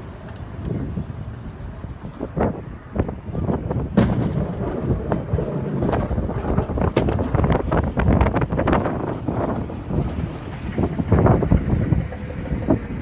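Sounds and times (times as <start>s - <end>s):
vehicle low rumble: 0.0s - 13.0s
knocks and clatters: 3.8s - 13.0s.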